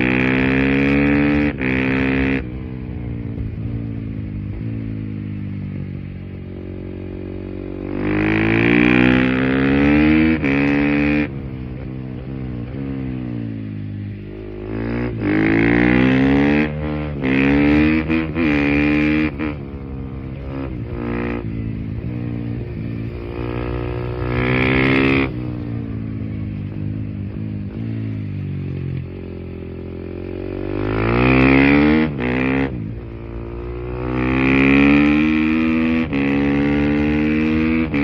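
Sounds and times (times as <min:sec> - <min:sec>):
motorcycle engine revving: 0:00.0 - 0:38.0.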